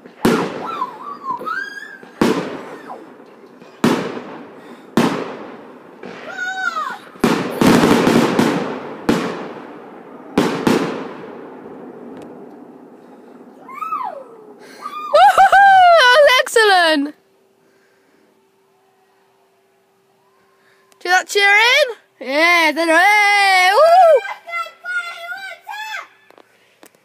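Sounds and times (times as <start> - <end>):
fireworks bangs with echo: 0.0 - 13.6
fireworks crackling: 0.0 - 17.1.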